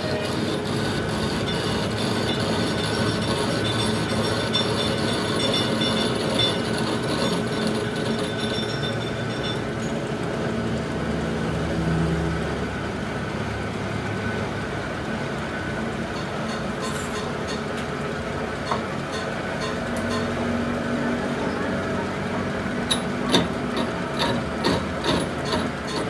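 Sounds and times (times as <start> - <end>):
metallic ringing tones: 0.0 - 10.0
steady machine noise: 0.0 - 26.0.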